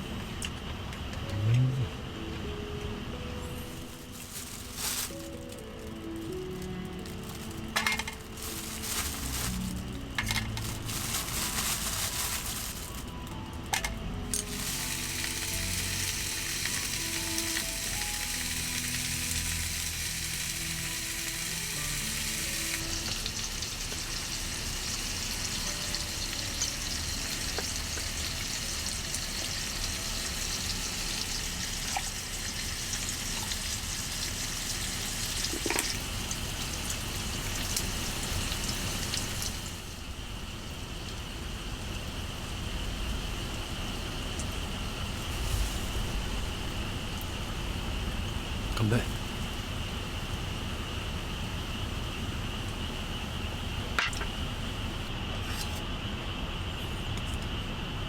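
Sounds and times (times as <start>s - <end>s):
meat sizzling in a pan: 14.4s - 40.0s.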